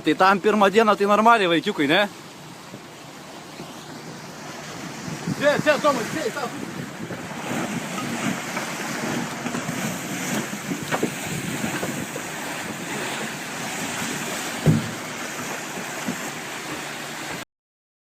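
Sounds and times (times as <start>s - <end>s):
sea waves rushing: 0.0s - 17.4s
wind buffeting microphone: 3.9s - 16.5s
low thump: 14.6s - 15.1s.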